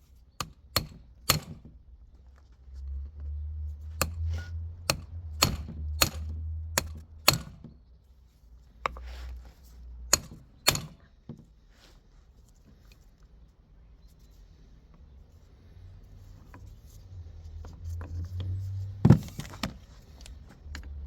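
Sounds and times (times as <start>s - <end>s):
sharp mechanical clicks and knocks: 0.4s - 1.7s, 4.9s - 7.7s, 10.1s - 11.1s.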